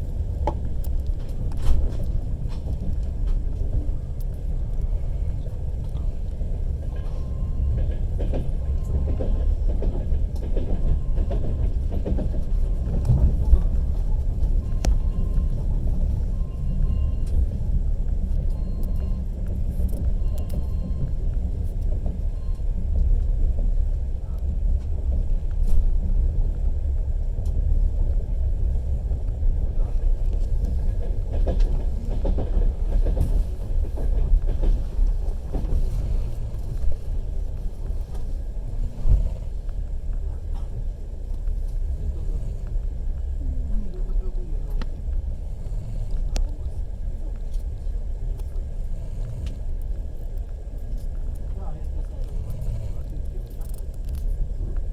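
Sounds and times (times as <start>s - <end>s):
train carriage low rumble: 0.0s - 54.9s
train wheels knocking: 6.8s - 18.3s, 30.0s - 43.3s.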